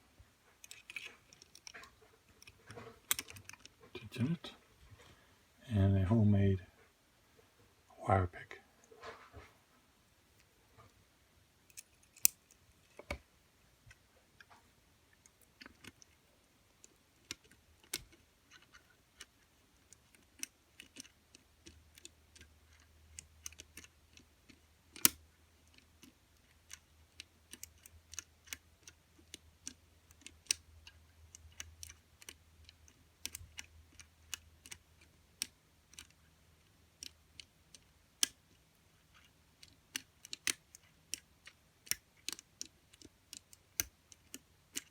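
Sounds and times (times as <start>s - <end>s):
small metal clicks in a padlock: 0.6s - 3.7s, 11.7s - 12.6s, 16.8s - 44.9s.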